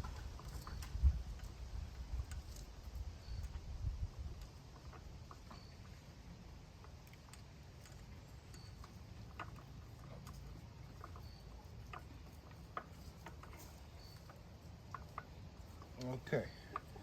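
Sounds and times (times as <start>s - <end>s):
clicks and knocks of bike parts: 6.8s - 17.0s.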